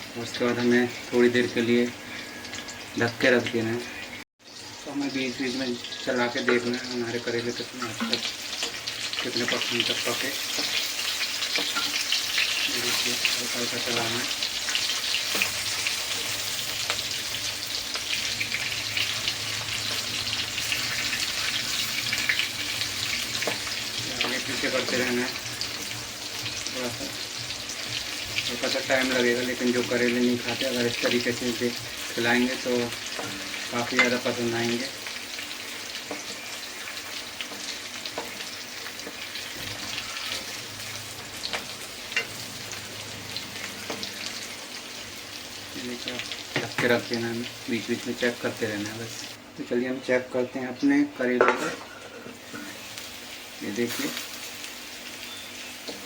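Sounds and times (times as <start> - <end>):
vegetables sizzling in hot oil: 0.0 - 56.0.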